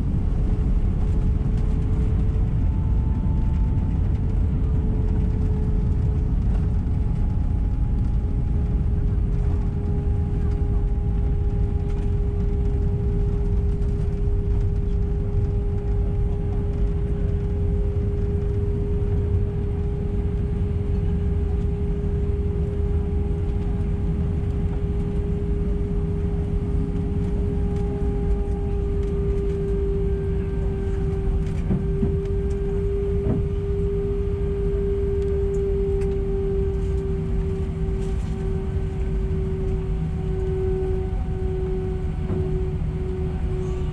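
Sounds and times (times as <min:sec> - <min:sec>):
airliner cabin rumble: 0:00.0 - 0:43.9
jet engine tone: 0:11.4 - 0:43.9.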